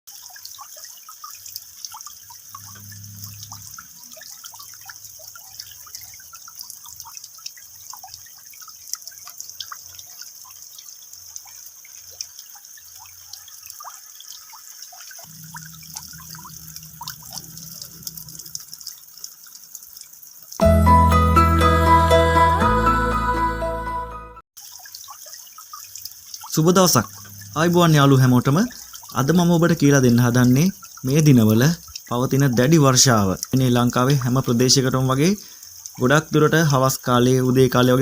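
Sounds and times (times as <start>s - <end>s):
raindrops plinking into water: 0.1s - 20.7s, 24.6s - 37.9s
low hum: 15.3s - 18.7s.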